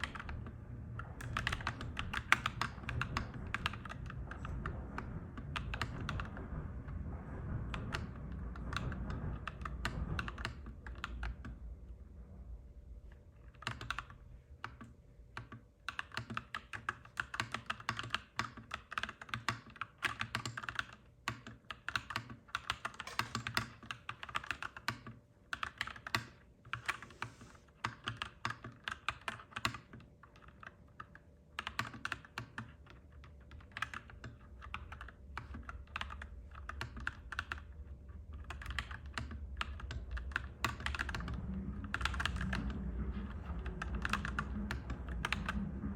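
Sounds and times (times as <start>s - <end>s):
mechanical keyboard typing: 0.0s - 6.5s, 7.6s - 11.6s, 13.3s - 45.9s
low rumble: 0.0s - 14.6s, 34.7s - 45.9s.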